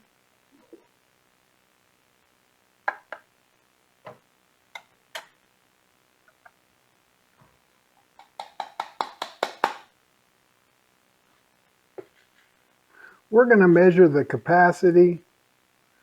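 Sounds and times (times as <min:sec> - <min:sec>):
quick taps: 0:08.2 - 0:09.9.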